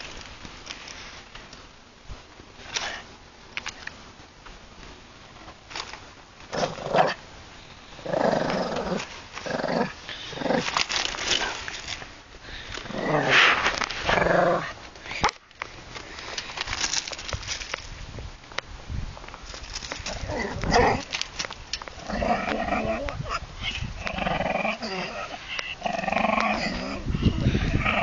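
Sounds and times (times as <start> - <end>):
dog growling: 6.5 - 7.2, 8.0 - 11.4, 12.9 - 14.8, 20.1 - 21.1, 22.0 - 23.4, 24.0 - 28.0.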